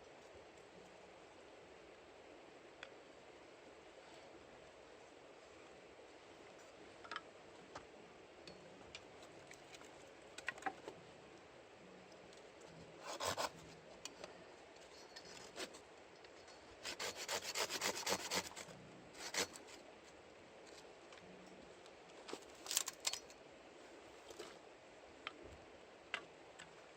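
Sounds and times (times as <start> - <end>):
rough strokes on wood: 13.0 - 13.6, 16.8 - 19.8
firewood being cut and scraped: 13.0 - 13.8, 15.2 - 15.8, 16.8 - 19.8.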